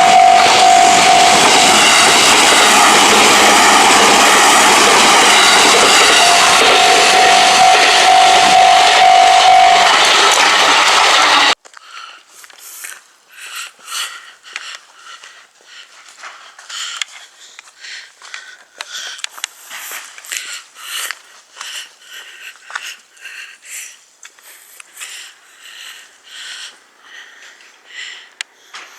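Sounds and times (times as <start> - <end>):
crossing warning bell: 0.0 - 11.6
train rumbling: 0.0 - 11.6.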